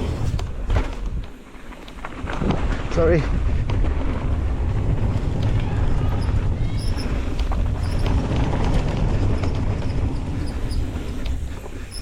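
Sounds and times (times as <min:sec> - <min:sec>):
bike chain and frame rattling: 0:01.6 - 0:12.0
wind buffeting microphone: 0:02.2 - 0:12.0.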